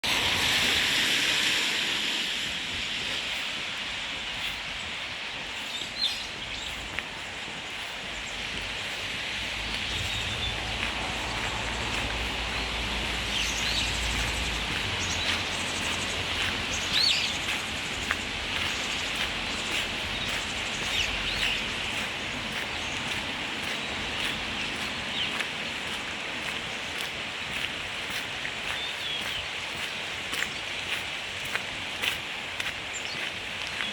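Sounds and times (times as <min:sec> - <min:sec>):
birds chirping: 0:00.1 - 0:33.9.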